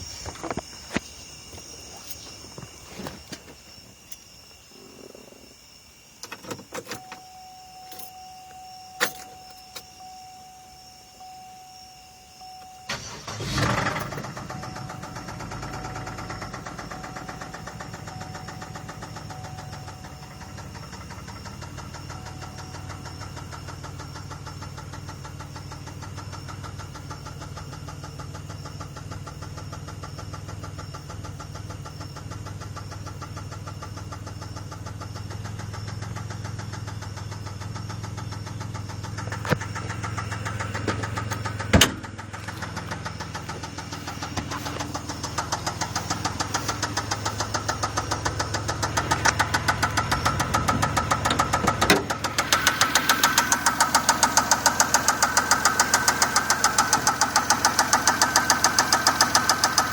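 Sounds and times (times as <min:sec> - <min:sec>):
car engine running: 0:00.0 - 0:10.2, 0:12.5 - 0:59.9
rhythmic engine knocking: 0:14.8 - 0:59.9
sharp thump: 0:41.7 - 0:42.2.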